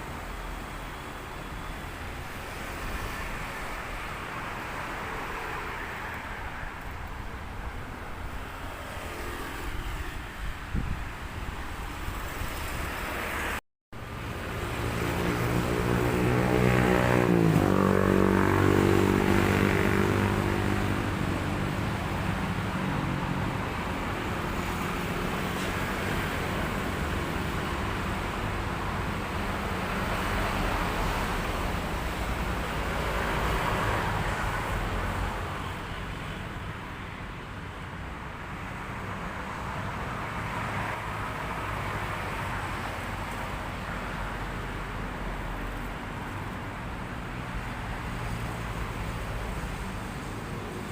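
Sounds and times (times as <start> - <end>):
steady traffic noise: 0.0 - 50.9
vehicle passing by: 14.5 - 23.6.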